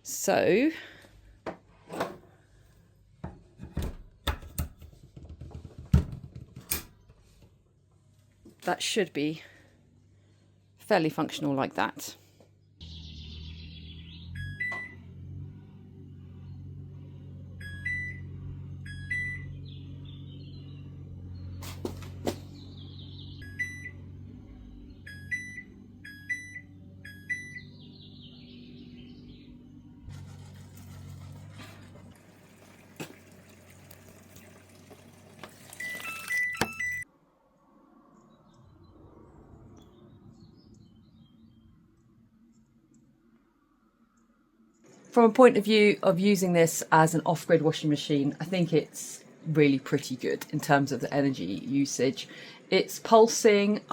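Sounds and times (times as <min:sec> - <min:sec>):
washing machine button beeps: 0:14.4 - 0:15.0, 0:17.6 - 0:18.2, 0:18.9 - 0:19.5, 0:23.4 - 0:23.9, 0:25.1 - 0:27.7, 0:35.6 - 0:37.1
washing machine low hum: 0:14.5 - 0:22.7, 0:23.4 - 0:37.0.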